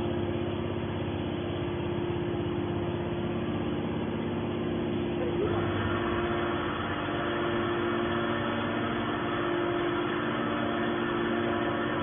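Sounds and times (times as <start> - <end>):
baling machinery humming: 0.0 - 12.0.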